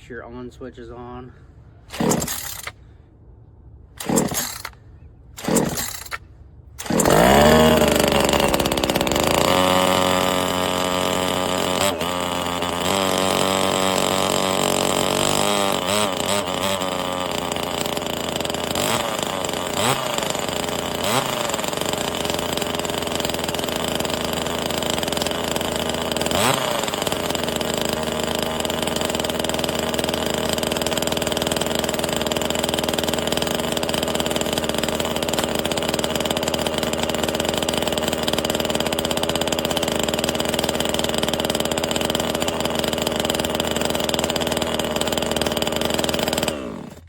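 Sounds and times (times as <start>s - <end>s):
chainsaw running: 1.9s - 2.8s, 4.0s - 4.8s, 5.4s - 6.2s, 6.8s - 47.0s.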